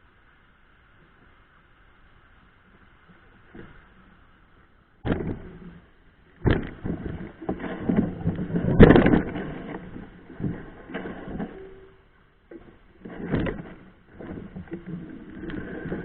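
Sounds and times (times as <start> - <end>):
mountain bike knocking and rattling: 5.0 - 16.0.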